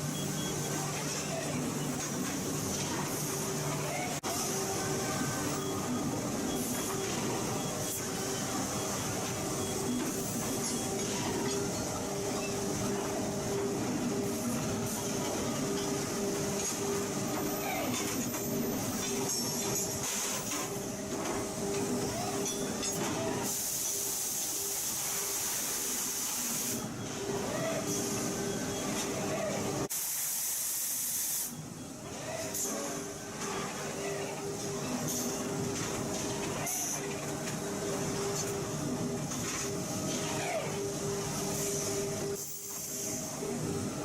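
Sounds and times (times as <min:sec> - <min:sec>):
factory machinery humming: 0:00.0 - 0:44.0.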